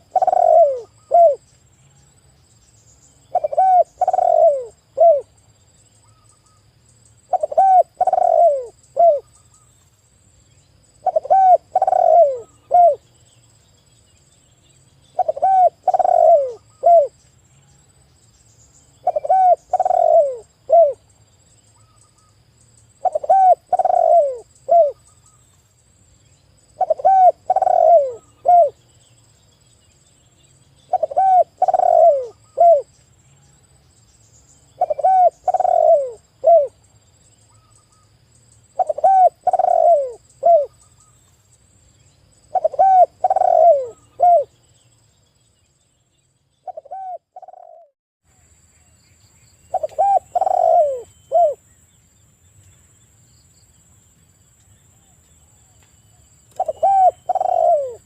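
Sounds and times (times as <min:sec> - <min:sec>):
dove cooing: 0:00.0 - 0:01.4, 0:03.3 - 0:05.3, 0:07.3 - 0:09.3, 0:11.0 - 0:13.0, 0:15.2 - 0:17.2, 0:19.0 - 0:21.0, 0:23.0 - 0:25.0, 0:26.8 - 0:28.8, 0:30.9 - 0:32.9, 0:34.8 - 0:36.8, 0:38.8 - 0:40.8, 0:42.5 - 0:44.6, 0:46.6 - 0:47.9, 0:49.7 - 0:51.6, 0:56.5 - 0:58.0.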